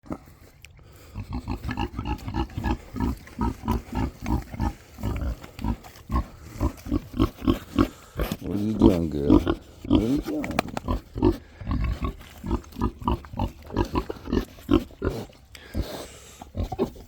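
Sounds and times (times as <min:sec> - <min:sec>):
pigs grunting: 0:00.0 - 0:17.0.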